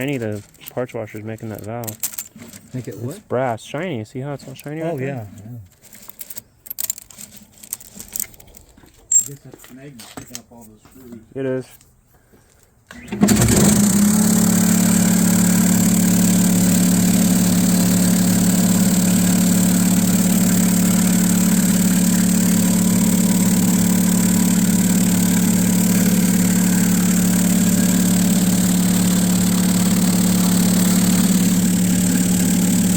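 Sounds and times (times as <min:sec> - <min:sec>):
motor running with hum and whine: 0:13.0 - 0:32.9.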